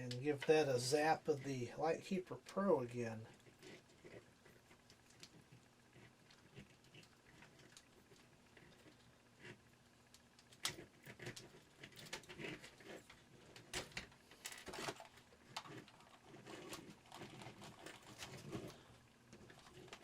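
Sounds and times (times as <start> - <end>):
plastic clicks and rustling: 10.1 - 20.0.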